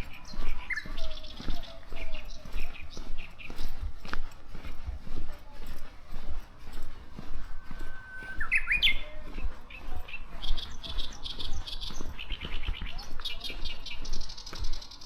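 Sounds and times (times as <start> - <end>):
bird singing whistled song: 0.0 - 3.8, 6.2 - 15.0
high trilled bird notes: 7.6 - 9.2.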